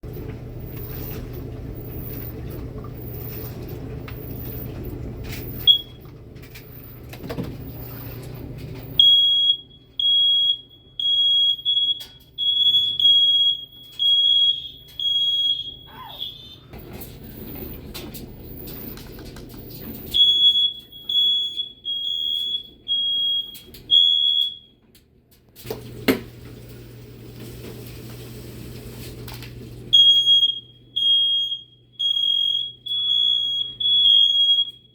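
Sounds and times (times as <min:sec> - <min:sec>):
smoke alarm beeping: 0:00.6 - 0:06.1, 0:08.8 - 0:16.7, 0:19.8 - 0:24.8, 0:29.9 - 0:34.9
smoke alarm chirp: 0:05.5 - 0:06.0, 0:09.0 - 0:16.7, 0:20.0 - 0:24.8, 0:29.9 - 0:34.9.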